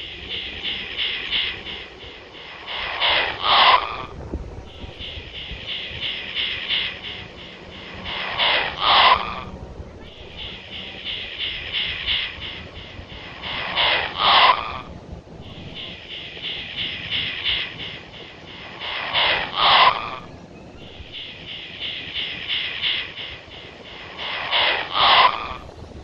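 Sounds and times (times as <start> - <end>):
animal clicking pulses: 0.1 - 25.8
harsh animal calls: 2.4 - 4.2, 5.0 - 9.6, 10.2 - 14.9, 18.5 - 20.4.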